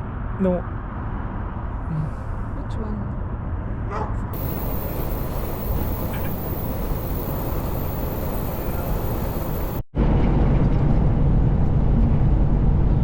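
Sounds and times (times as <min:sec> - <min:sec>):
low rumbling noise: 0:04.4 - 0:13.0.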